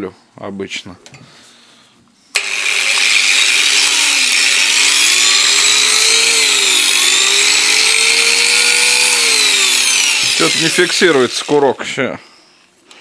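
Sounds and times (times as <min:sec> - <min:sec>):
angle grinder whining: 0:02.4 - 0:12.6.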